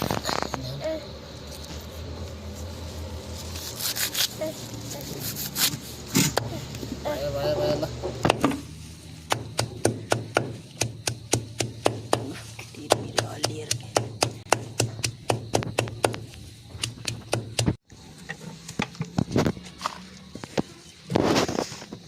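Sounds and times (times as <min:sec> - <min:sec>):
rapid sharp knocks: 0:09.3 - 0:17.8.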